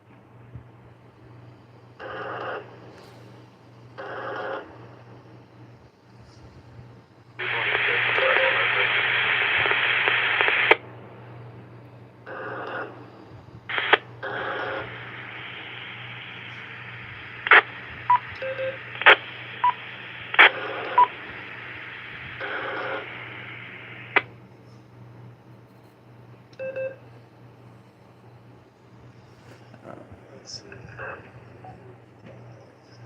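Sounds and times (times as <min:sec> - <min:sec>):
radio carrier hiss: 0:07.4 - 0:10.8, 0:12.3 - 0:24.3, 0:29.2 - 0:33.0
short beeps and tone bursts: 0:18.1 - 0:18.8, 0:26.6 - 0:27.0.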